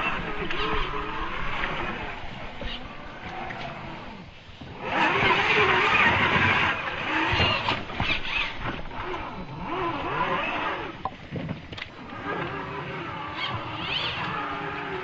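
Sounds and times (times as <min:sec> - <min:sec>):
toy car motor whining: 0:04.8 - 0:11.0, 0:12.1 - 0:15.0.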